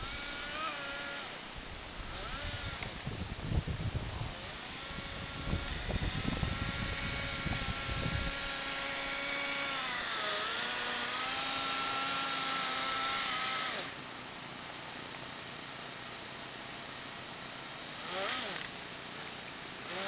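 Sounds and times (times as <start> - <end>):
small engine buzzing whine: 0.0 - 20.0.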